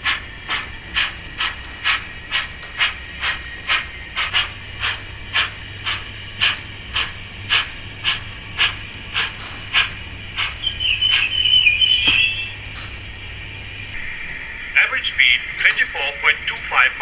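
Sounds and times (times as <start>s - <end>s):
steam locomotive chuffs: 0.0s - 17.0s
high squeal of brakes: 9.2s - 12.8s.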